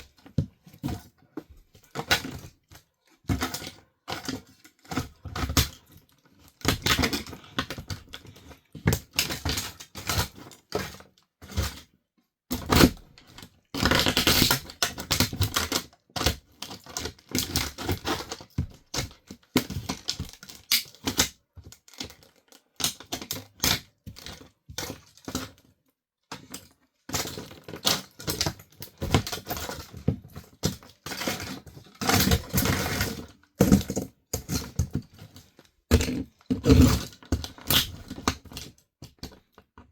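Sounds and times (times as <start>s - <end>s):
plastic toy crunching under shoes: 35.9s - 38.6s.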